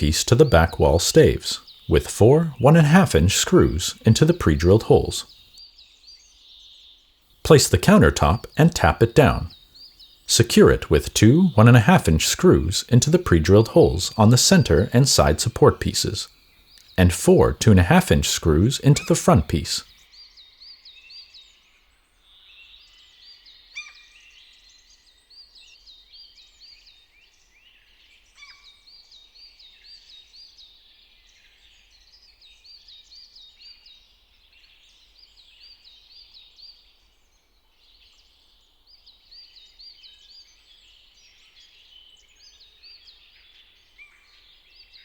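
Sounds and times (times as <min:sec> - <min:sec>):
birds chirping faintly: 0:00.0 - 0:05.7, 0:07.5 - 0:19.8.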